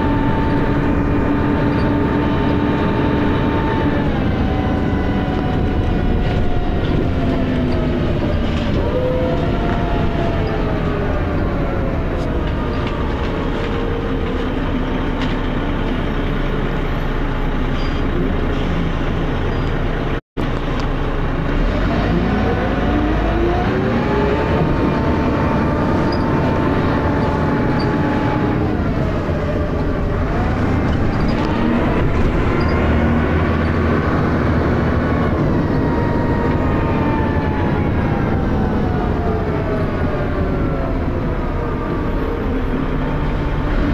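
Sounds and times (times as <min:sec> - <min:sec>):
transmission whine: 0:00.0 - 0:21.2, 0:21.9 - 0:43.9.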